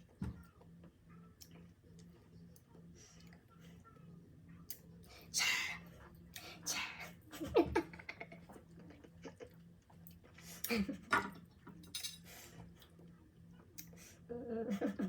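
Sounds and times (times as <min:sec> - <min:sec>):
tableware clinking: 0:11.2 - 0:12.2.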